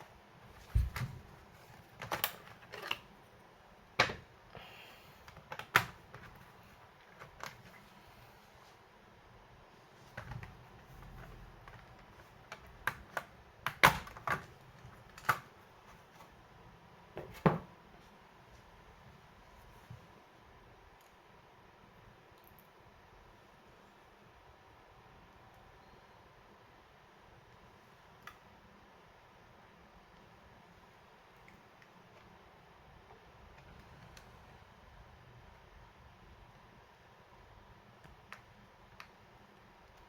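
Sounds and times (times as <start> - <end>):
hands handling laptop parts: 0.4 - 3.1, 5.2 - 8.0, 10.0 - 16.4.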